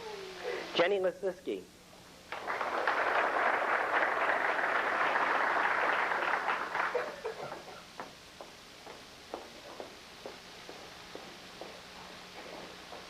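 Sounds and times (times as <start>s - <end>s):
audience applauding: 2.3s - 7.8s.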